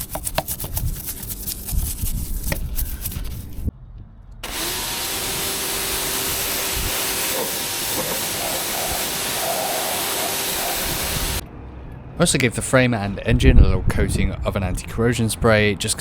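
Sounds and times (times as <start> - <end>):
hiss of spray: 4.4 - 11.4.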